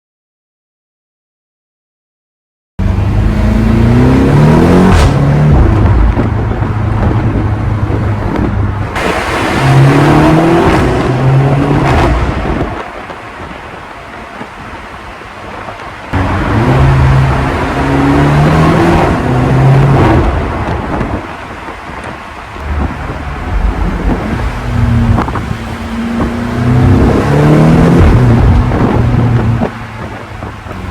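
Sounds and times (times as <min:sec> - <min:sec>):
car engine revving: 0:02.8 - 0:12.8, 0:16.1 - 0:21.7, 0:22.5 - 0:30.9
exhaust pops: 0:04.8 - 0:09.9, 0:21.9 - 0:30.9.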